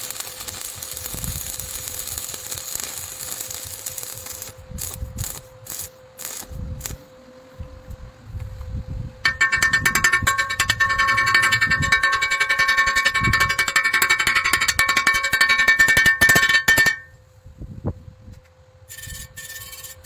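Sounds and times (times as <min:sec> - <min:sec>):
welding arc crackling: 0:00.0 - 0:06.4.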